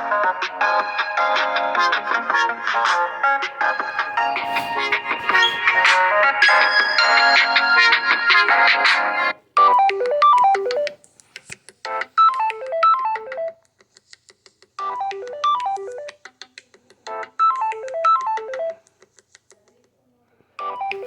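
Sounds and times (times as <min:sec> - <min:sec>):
electronic phone ringtone: 0:05.3 - 0:11.0, 0:12.2 - 0:13.6, 0:14.9 - 0:16.1.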